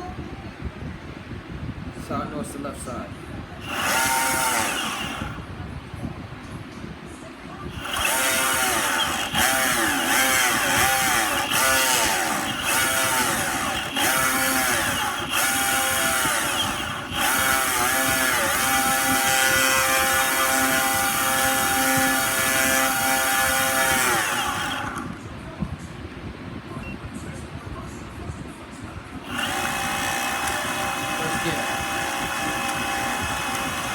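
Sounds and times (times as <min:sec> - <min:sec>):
electric skateboard motor whining: 0:03.6 - 0:05.4, 0:07.8 - 0:25.2, 0:29.3 - 0:33.9.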